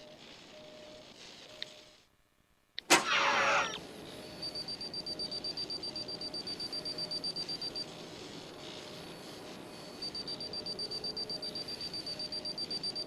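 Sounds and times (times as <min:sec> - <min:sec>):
crackling electrical burst: 0:02.9 - 0:03.8.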